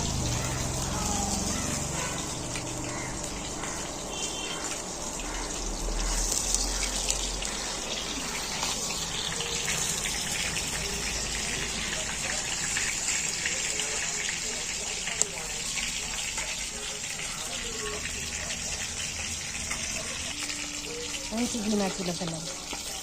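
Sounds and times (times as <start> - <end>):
small crackles: 0.0 - 10.9
water gushing: 0.0 - 23.0.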